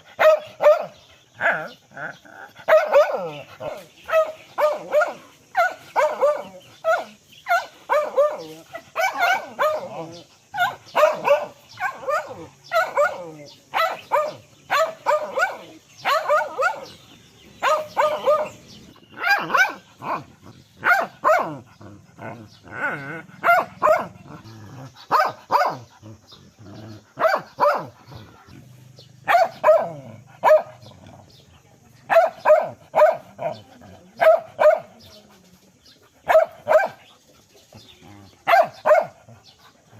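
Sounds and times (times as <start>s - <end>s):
dog barking: 0.0s - 1.8s, 2.7s - 17.0s, 17.6s - 21.7s, 23.4s - 24.4s, 25.1s - 26.0s, 27.1s - 28.0s, 29.2s - 30.9s, 32.1s - 33.6s, 34.2s - 35.1s, 36.2s - 37.1s, 38.4s - 39.3s.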